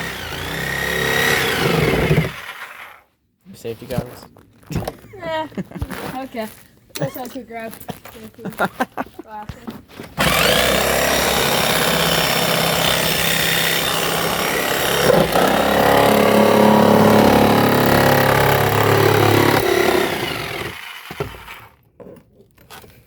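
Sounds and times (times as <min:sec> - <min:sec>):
electric power saw cutting plastic: 0:00.0 - 0:03.0, 0:10.2 - 0:21.8.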